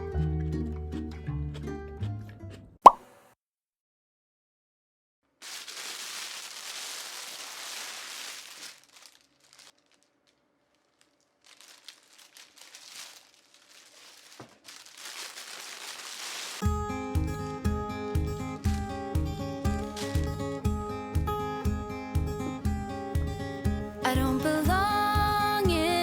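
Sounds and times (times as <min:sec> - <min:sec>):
packaging crinkling and rustling: 0:05.3 - 0:16.6, 0:19.8 - 0:20.5.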